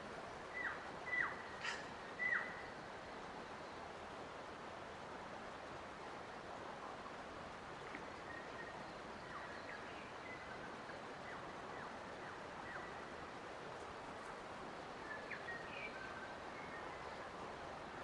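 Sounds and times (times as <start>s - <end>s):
steady rushing hiss: 0.0s - 8.2s.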